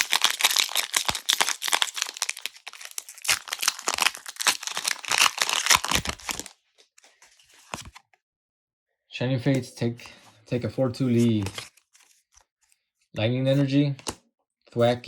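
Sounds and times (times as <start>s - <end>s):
foil wrapper crinkling and tearing: 0.0s - 6.6s.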